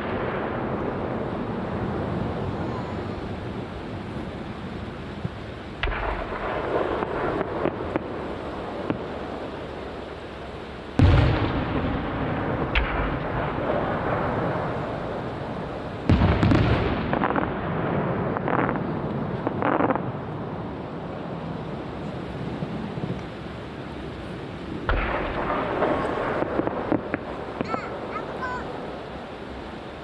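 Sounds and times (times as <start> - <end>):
firework shells bursting: 24.8 - 30.0.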